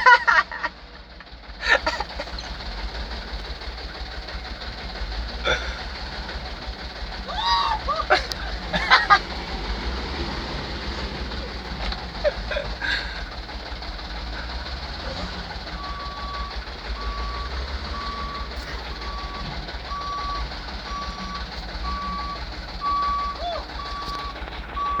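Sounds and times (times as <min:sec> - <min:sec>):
vehicle reversing alarm beeping: 0:14.4 - 0:25.0.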